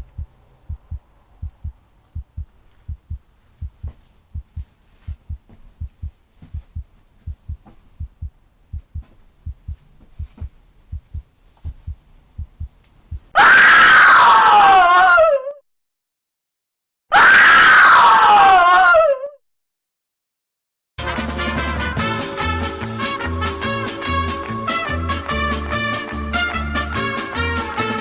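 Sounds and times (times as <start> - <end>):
heartbeat thumps: 0.0 - 13.4
loud falling scream: 13.4 - 15.6, 17.1 - 19.4.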